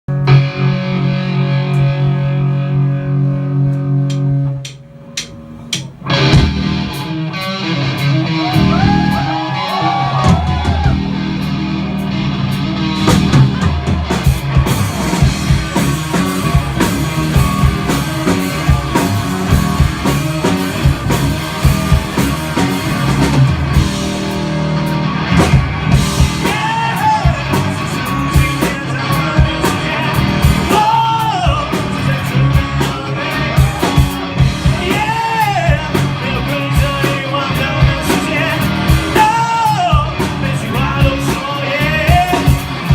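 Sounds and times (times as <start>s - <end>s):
bass guitar: 0.0s - 42.9s
electric guitar: 0.1s - 42.9s
drum kit: 3.7s - 42.9s
person singing: 26.2s - 42.8s.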